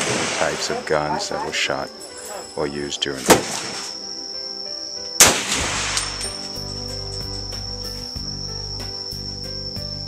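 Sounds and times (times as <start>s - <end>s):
rifle shot echo: 0.0s - 0.7s, 3.2s - 3.9s, 5.2s - 6.2s
insect drone: 0.0s - 10.0s.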